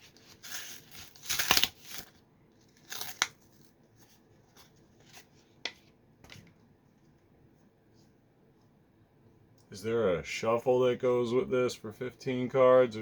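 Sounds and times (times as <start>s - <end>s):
plastic packaging crinkling: 0.0s - 3.7s.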